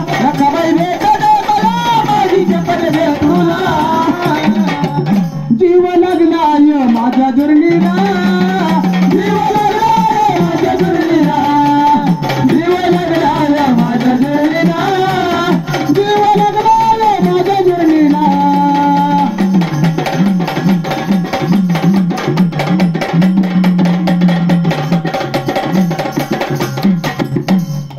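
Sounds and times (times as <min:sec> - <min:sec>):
person singing: 0:00.0 - 0:19.7
drums: 0:00.0 - 0:27.9
held accompanying tone: 0:00.0 - 0:27.9.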